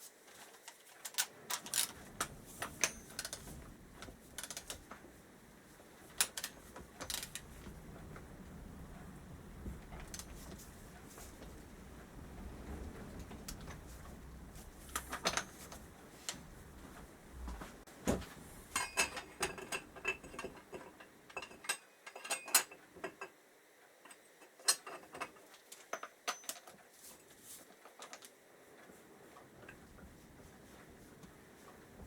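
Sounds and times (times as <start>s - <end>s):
metal tools clinking: 18.7s - 22.8s.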